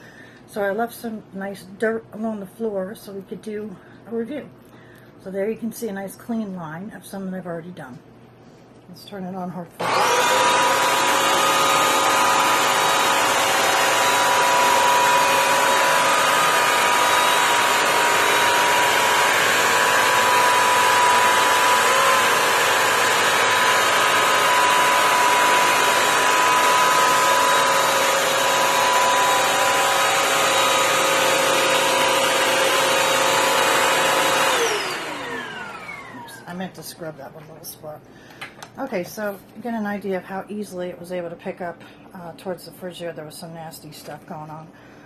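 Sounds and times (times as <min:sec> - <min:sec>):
wet-dry vacuum whining: 0:09.8 - 0:36.7.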